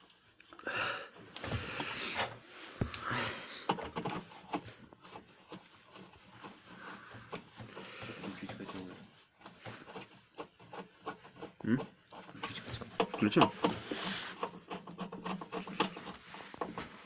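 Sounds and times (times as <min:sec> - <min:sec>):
clicks and knocks of tools: 0:03.6 - 0:04.7, 0:12.1 - 0:17.0.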